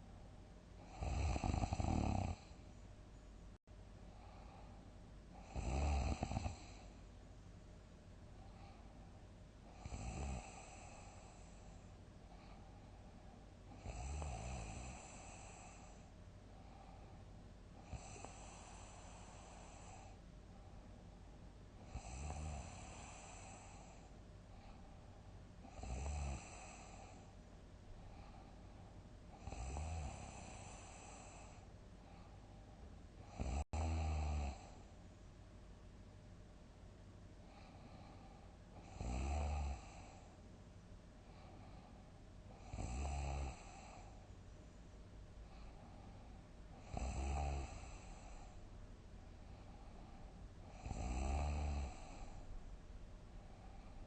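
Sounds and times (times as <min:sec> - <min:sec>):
quiet breathing: 0:00.0 - 0:54.0
person snoring: 0:00.8 - 0:02.6, 0:05.4 - 0:06.9, 0:09.7 - 0:11.6, 0:13.7 - 0:16.0, 0:17.8 - 0:20.2, 0:21.8 - 0:24.1, 0:25.6 - 0:27.2, 0:29.4 - 0:31.6, 0:33.2 - 0:34.8, 0:38.8 - 0:40.3, 0:42.5 - 0:44.2, 0:46.8 - 0:48.6, 0:49.5 - 0:52.5.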